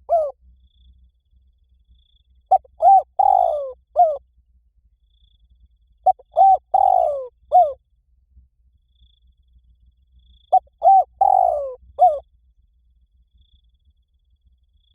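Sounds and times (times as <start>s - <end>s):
dove cooing: 0.0s - 0.4s, 2.5s - 4.2s, 6.0s - 7.8s, 10.5s - 12.2s.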